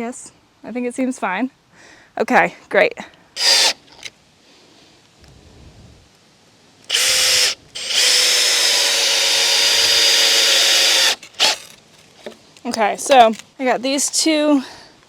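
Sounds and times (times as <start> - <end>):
power drill driving screws: 3.4 - 4.1, 6.9 - 11.8.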